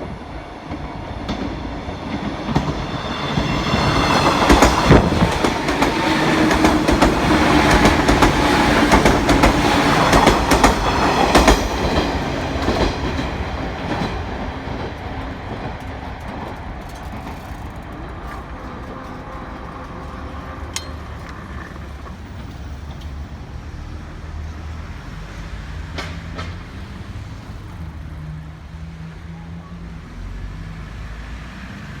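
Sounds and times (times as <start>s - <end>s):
electric train passing: 0.0s - 32.0s
wheels clicking over rail joints: 0.7s - 28.6s.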